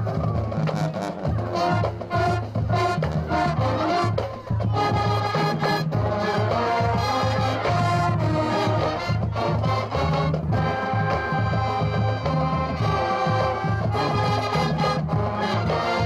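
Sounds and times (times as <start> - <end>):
marching band playing: 0.0 - 16.0.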